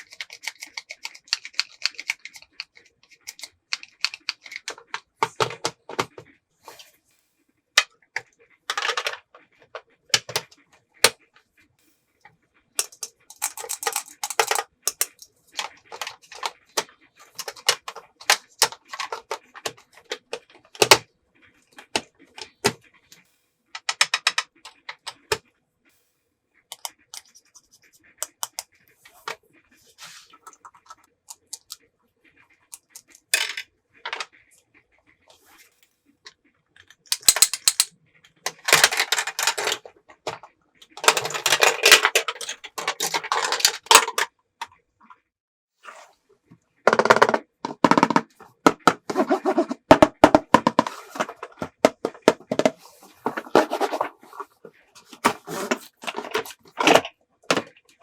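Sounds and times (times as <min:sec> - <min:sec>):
plastic toy pieces clicking: 0:00.0 - 0:06.1, 0:12.8 - 0:21.0, 0:23.8 - 0:25.4, 0:36.8 - 0:44.3
scraping and rustling: 0:47.7 - 0:57.8.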